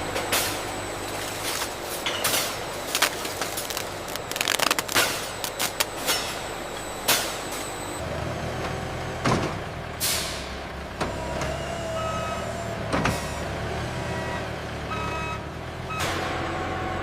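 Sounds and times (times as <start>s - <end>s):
factory machinery running: 0.0s - 8.2s.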